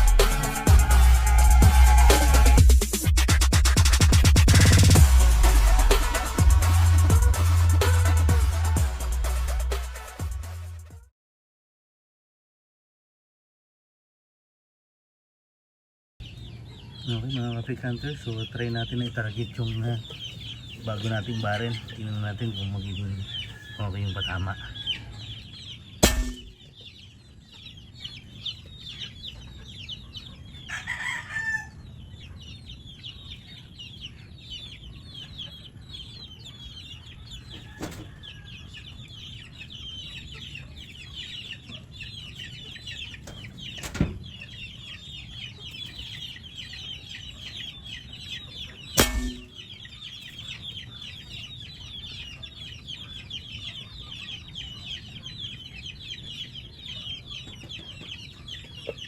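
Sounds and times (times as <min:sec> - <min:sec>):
chickens clucking: 0:00.0 - 0:10.1, 0:16.2 - 0:59.0
steady high chirping: 0:38.9 - 0:57.5.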